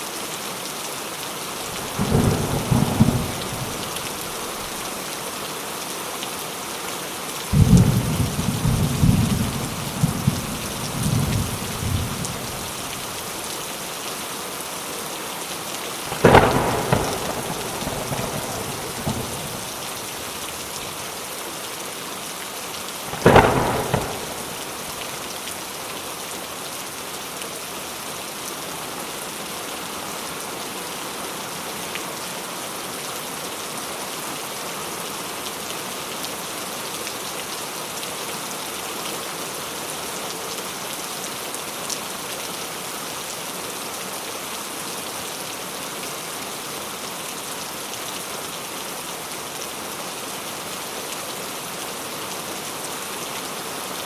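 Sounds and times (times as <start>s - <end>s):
steady rain falling: 0.0s - 54.0s
low thunder rumbles: 1.7s - 4.8s, 7.6s - 13.4s, 16.1s - 20.9s, 23.1s - 25.3s
sharp thunderclaps: 1.7s - 4.8s, 7.6s - 13.2s, 16.1s - 20.1s, 23.1s - 25.3s.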